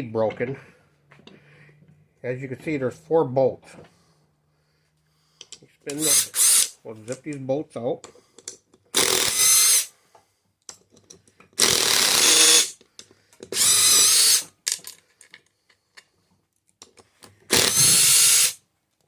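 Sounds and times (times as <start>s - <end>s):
power drill spinning out bolts: 5.9s - 6.8s, 8.9s - 9.9s, 11.6s - 12.8s, 13.5s - 14.7s, 17.5s - 18.6s.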